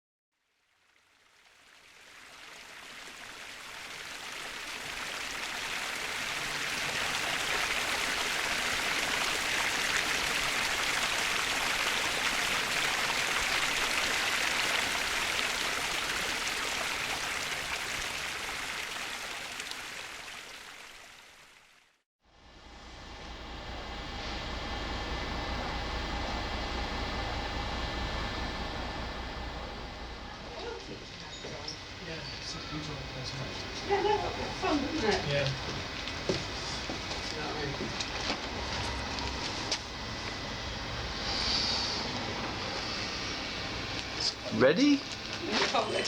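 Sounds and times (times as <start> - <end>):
stream water rushing: 1.6 - 21.8.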